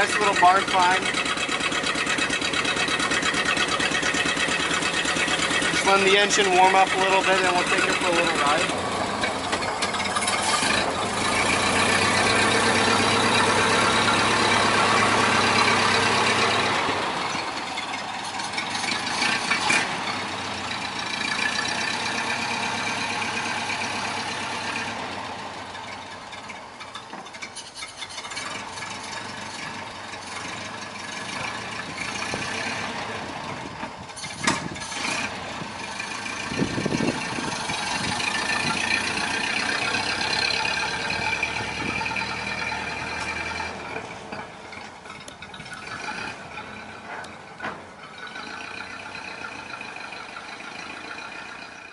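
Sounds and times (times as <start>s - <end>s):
car engine idling: 0.0s - 51.9s
sharp engine knocks: 43.1s - 48.4s.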